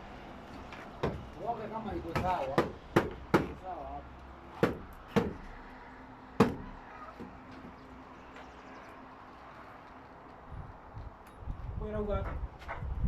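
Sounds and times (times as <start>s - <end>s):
hammer knocks on wood: 1.0s - 1.2s, 2.1s - 3.6s, 4.6s - 5.5s, 6.4s - 7.4s.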